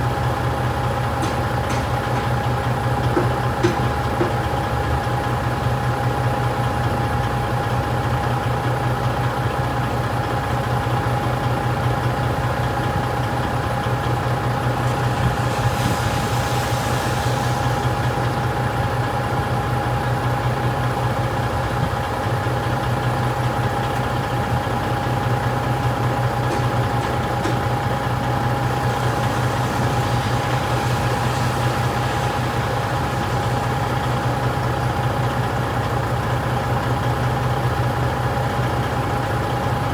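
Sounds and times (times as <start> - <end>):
diesel engine idling: 0.0 - 39.9
thin whine: 14.0 - 19.8, 25.8 - 35.9
brief hiss: 14.2 - 19.8, 25.6 - 35.6.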